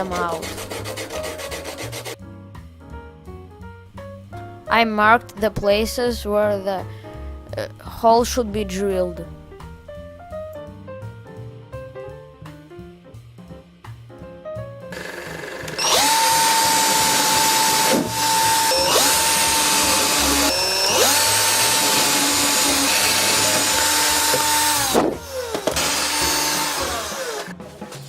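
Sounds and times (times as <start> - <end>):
electric drill whining: 15.0 - 27.5.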